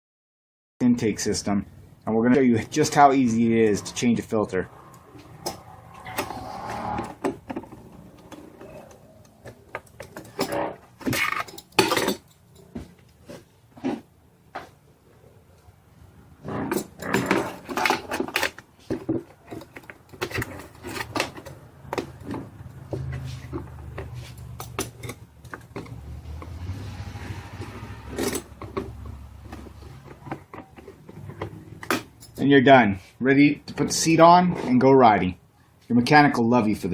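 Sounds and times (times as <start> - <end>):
hands clicking and knocking parts: 7.0 - 13.2, 16.6 - 26.7, 27.6 - 32.4.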